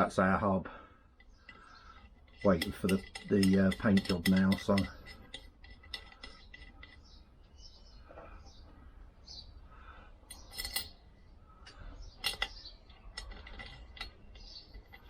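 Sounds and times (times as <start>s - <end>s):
light metallic clinks and taps: 10.3s - 11.0s.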